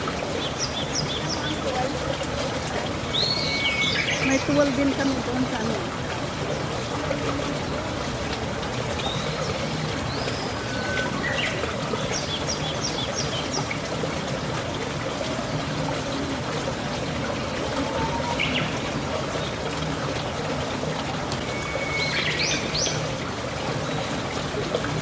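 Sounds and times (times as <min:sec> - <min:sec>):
running water rushing: 0:00.0 - 0:25.0
birds chirping and whistling: 0:16.5 - 0:19.6, 0:21.1 - 0:23.2.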